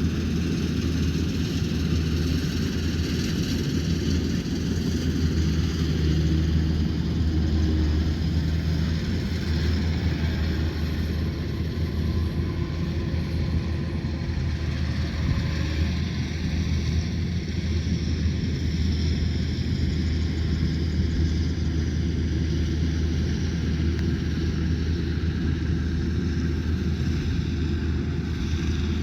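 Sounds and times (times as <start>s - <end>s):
diesel engine running: 0.0s - 29.0s
machinery noise: 0.0s - 29.0s.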